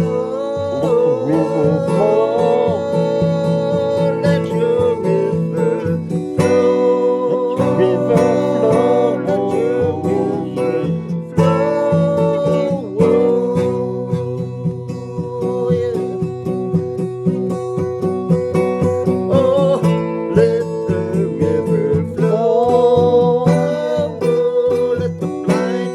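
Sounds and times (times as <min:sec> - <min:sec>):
worship band music: 0:00.0 - 0:16.2
strummed acoustic guitar: 0:00.0 - 0:25.9.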